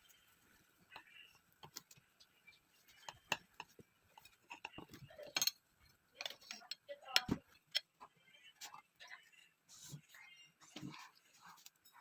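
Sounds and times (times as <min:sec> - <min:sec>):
kitchen utensils and dishes clicking: 0:03.0 - 0:05.6, 0:06.2 - 0:07.9.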